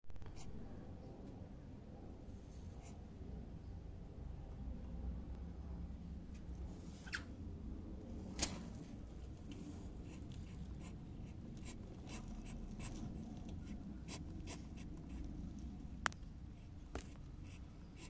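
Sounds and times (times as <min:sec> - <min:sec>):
low steady hum: 0:00.1 - 0:18.0
light clicks and scratching: 0:08.4 - 0:17.6.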